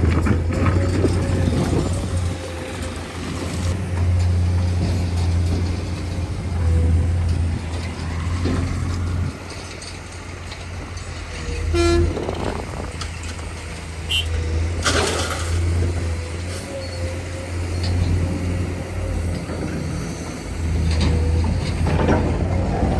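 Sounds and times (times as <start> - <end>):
heavy diesel machinery running: 0.0 - 22.9
horn toot: 11.6 - 12.7, 14.1 - 14.5.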